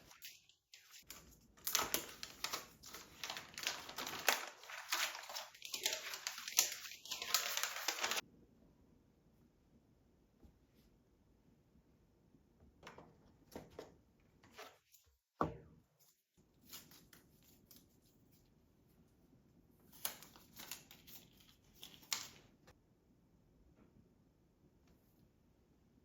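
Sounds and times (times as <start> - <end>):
packaging rustling and tearing: 0.0 - 8.2, 19.9 - 22.5.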